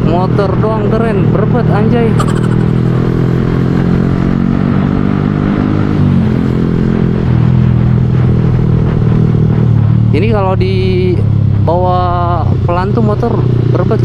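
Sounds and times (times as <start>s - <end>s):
motorcycle engine running: 0.0s - 14.0s.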